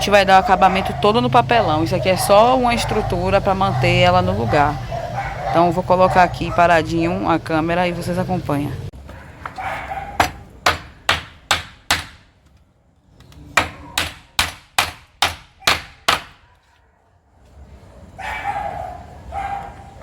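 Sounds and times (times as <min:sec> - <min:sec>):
hammer driving nails into wood: 0:10.2 - 0:12.3, 0:13.6 - 0:16.4.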